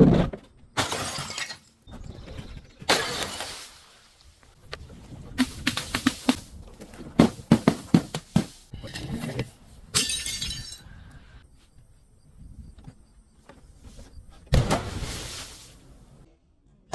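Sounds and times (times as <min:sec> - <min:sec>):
glass bottle cracking and shattering: 0:00.8 - 0:01.7, 0:10.0 - 0:10.9.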